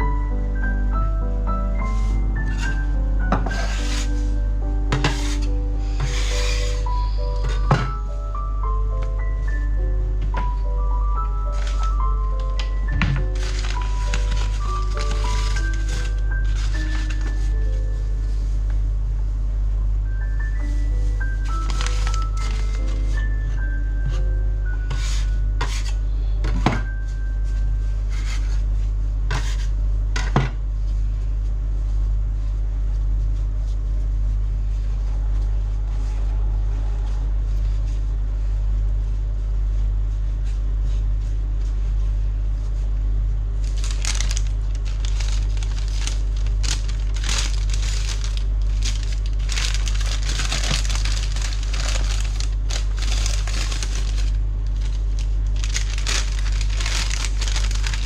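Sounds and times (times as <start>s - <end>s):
low hum: 0.0s - 58.0s
crinkling and rustling: 10.3s - 18.9s, 20.5s - 29.7s, 43.6s - 58.0s.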